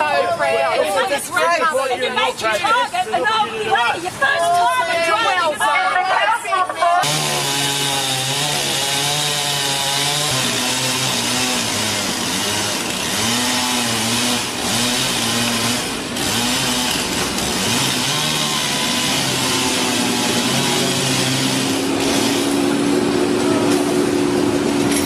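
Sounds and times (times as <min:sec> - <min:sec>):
chainsaw cutting limbs: 0:07.0 - 0:25.0.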